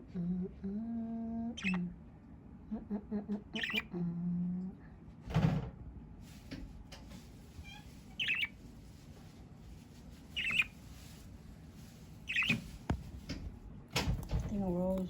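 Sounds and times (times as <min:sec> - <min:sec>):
budgerigar chirping: 0:01.6 - 0:01.8, 0:03.5 - 0:03.9, 0:08.1 - 0:08.6, 0:10.4 - 0:10.8, 0:12.3 - 0:12.6.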